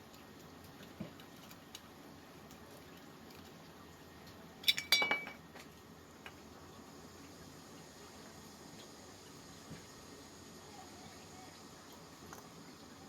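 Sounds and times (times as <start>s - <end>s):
ringing metallic clinks: 4.6s - 5.4s.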